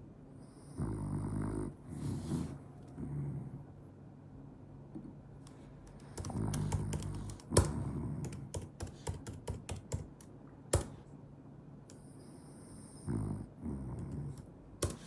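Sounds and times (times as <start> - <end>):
dog snoring: 0.4 - 3.6, 6.3 - 8.4, 12.1 - 14.4
quick irregular clicks: 5.4 - 11.0.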